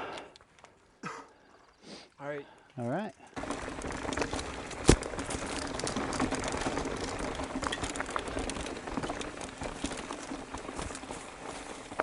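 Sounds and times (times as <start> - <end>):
bike tyres crunching over stones: 0.4 - 12.0
small knocks from bike: 3.4 - 12.0.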